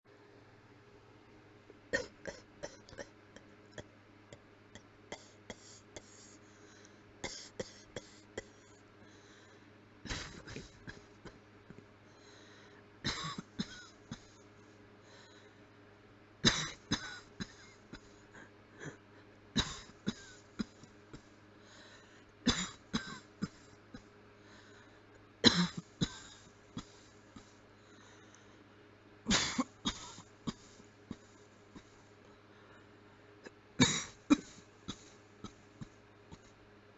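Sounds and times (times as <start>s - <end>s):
person coughing: 1.9s - 3.9s, 5.2s - 6.4s, 7.2s - 8.5s, 10.1s - 11.4s, 13.1s - 14.4s, 16.4s - 18.2s, 19.6s - 21.3s, 22.5s - 24.1s, 25.4s - 27.6s, 29.3s - 32.0s, 33.8s - 36.5s.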